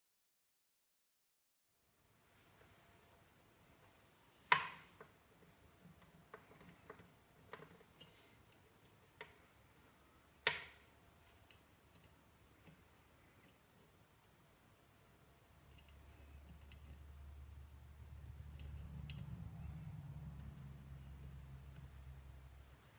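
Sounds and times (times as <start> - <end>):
light clicks and knocks: 3.8 - 9.6.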